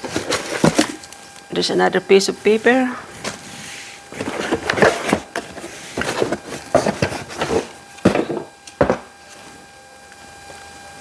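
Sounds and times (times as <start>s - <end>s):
cardboard and paper rustling: 0.0s - 1.1s, 3.2s - 8.5s.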